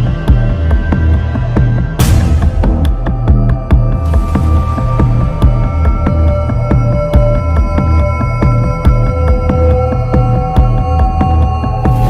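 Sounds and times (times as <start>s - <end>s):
low bass drone: 1.4s - 12.0s
sharp percussive hits: 2.0s - 5.9s.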